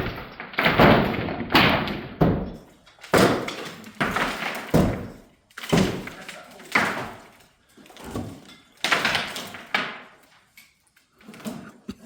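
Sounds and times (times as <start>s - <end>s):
heavy blows on wooden framing: 0.0s - 7.4s.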